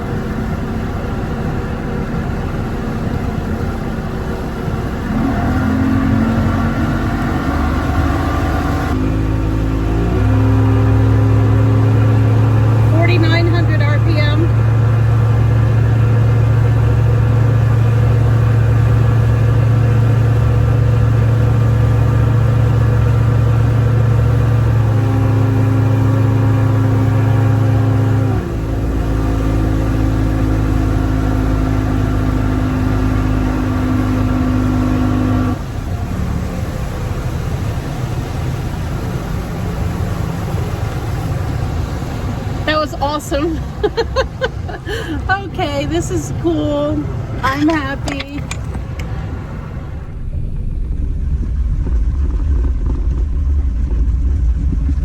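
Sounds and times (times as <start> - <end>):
boat engine droning: 0.0 - 55.0.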